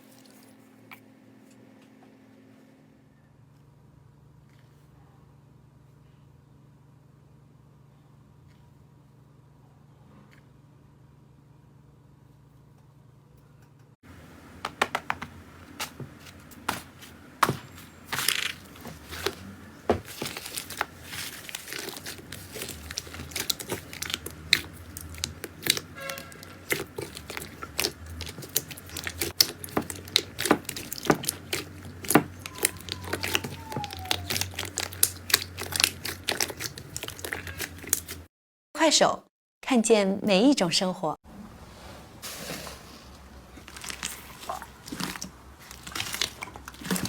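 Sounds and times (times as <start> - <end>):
slime crackling and popping: 20.1 - 38.2, 43.6 - 47.0.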